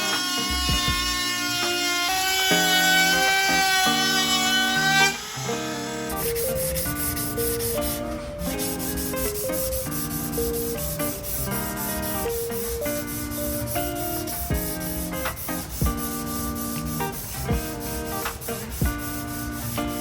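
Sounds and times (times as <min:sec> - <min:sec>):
background music with held notes: 0:00.0 - 0:20.0
wood being sanded: 0:11.8 - 0:19.8.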